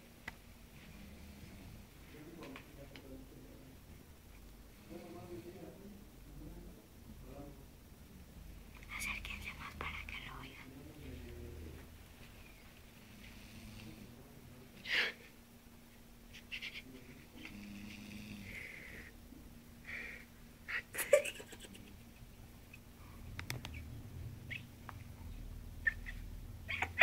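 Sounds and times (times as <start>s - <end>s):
man snoring softly: 0.8s - 1.9s, 13.0s - 14.3s, 17.2s - 19.2s.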